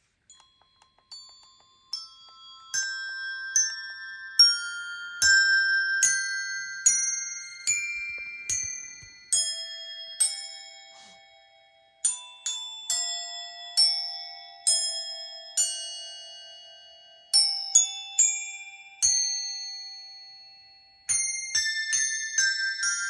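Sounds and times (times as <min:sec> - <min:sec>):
tuned metal percussion notes: 0:00.3 - 0:10.4.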